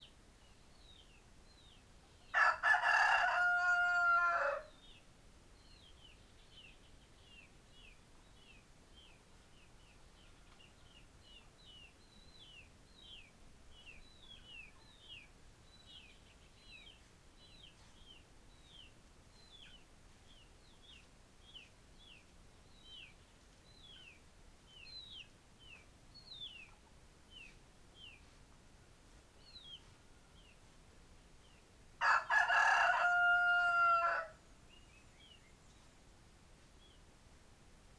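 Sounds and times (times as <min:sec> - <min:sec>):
rooster crowing: 0:02.4 - 0:04.7, 0:32.0 - 0:34.4.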